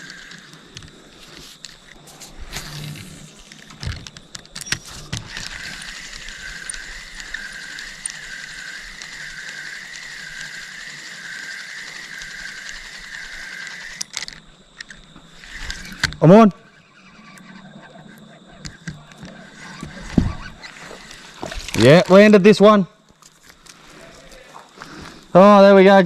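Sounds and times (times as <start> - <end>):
reel clicks: 0.0 - 22.2
fishing reel whirring: 0.0 - 22.4.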